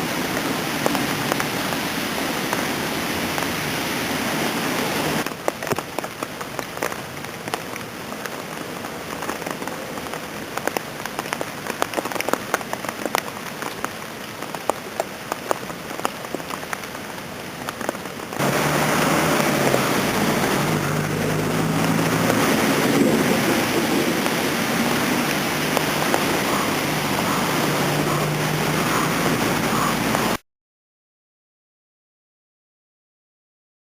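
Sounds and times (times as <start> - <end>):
steady rushing noise: 0.0 - 14.1, 17.8 - 30.4
rain falling: 0.0 - 30.4.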